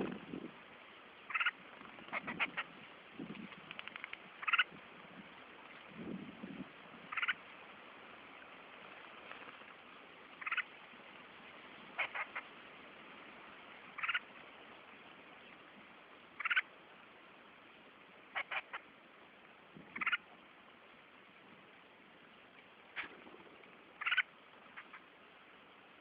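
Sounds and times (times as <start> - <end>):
faint steady hiss: 0.0 - 26.0
bird chirping: 1.3 - 2.6, 3.7 - 4.6, 7.1 - 7.4, 10.4 - 10.7, 12.0 - 12.5, 13.9 - 14.3, 16.4 - 16.7, 19.9 - 20.2, 24.0 - 25.1.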